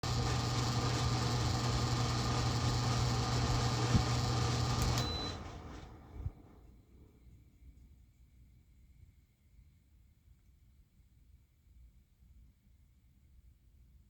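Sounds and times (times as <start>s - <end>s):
air conditioner humming: 0.0s - 6.6s
short beep: 5.0s - 5.4s.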